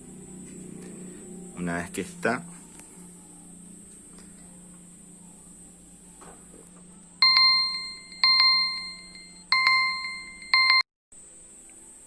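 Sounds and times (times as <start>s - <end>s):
electronic chime-like beeps: 7.2s - 10.8s.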